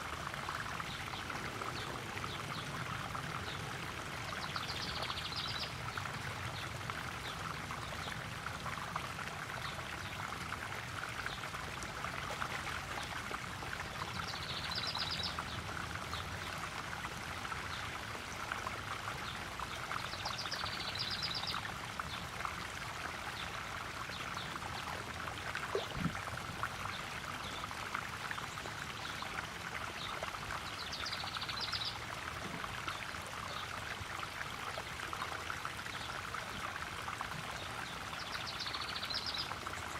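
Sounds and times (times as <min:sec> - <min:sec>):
waterfall splashing into pond: 0:00.0 - 0:39.9.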